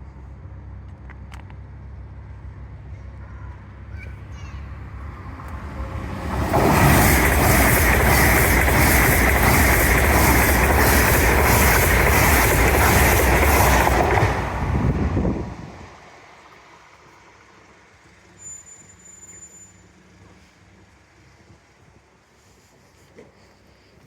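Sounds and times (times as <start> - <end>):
train passing at speed: 4.6 - 18.2
wheels clattering over rails: 4.9 - 15.8.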